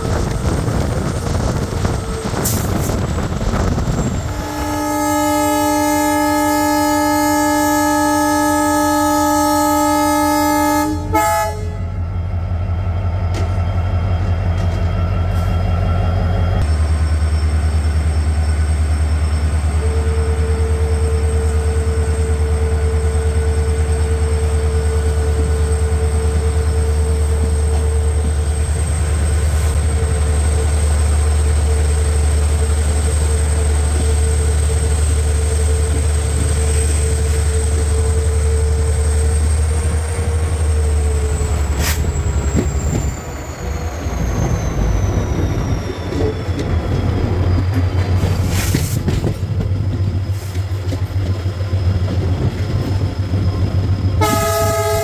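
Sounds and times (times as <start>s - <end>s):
diesel locomotive engine drone: 0.0s - 55.0s.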